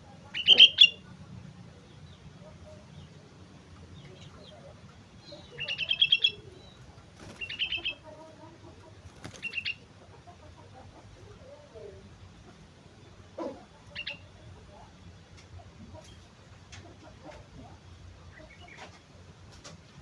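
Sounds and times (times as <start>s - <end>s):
bulbul calling: 0.1s - 1.2s, 3.9s - 14.9s.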